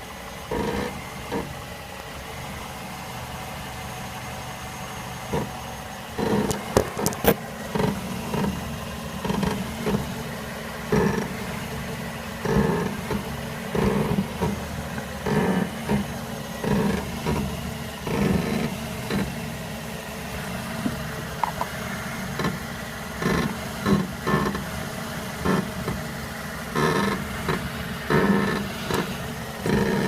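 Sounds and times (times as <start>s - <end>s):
suspension creaking: 6.2s - 10.2s, 10.9s - 19.3s, 20.7s - 22.6s, 26.7s - 30.0s.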